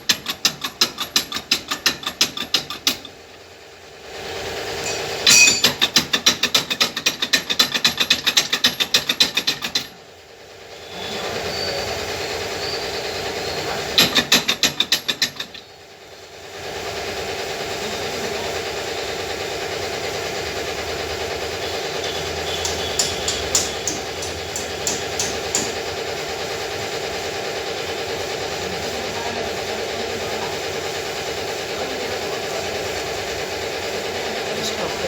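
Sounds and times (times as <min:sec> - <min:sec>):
rapid metallic clicking: 0:00.0 - 0:03.3, 0:04.8 - 0:10.0, 0:13.9 - 0:15.8, 0:20.5 - 0:28.2
steady mechanical hum: 0:00.0 - 0:35.0.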